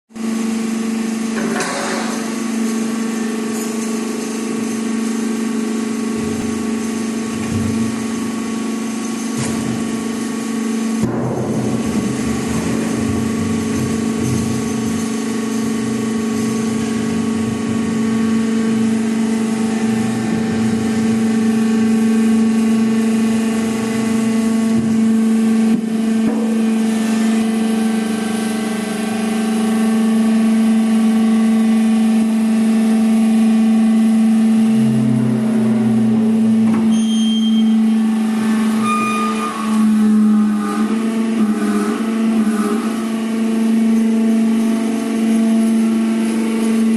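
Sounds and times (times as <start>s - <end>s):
hydraulic pump humming: 0.2s - 46.9s
high squeaks: 36.9s - 40.6s.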